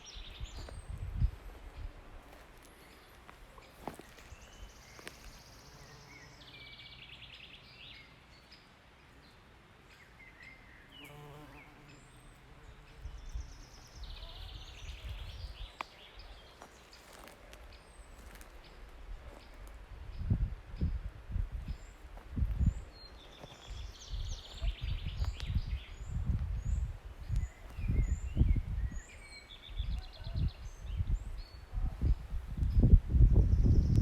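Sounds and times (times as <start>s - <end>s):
songbirds singing: 0.0s - 34.0s
flying insect buzzing: 5.0s - 6.6s, 11.0s - 15.4s.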